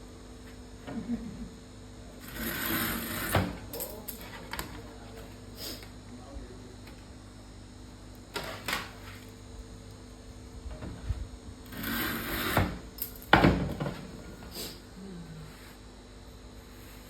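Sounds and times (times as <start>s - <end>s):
laminate cutter scraping stroke: 2.2s - 3.5s, 11.7s - 12.8s.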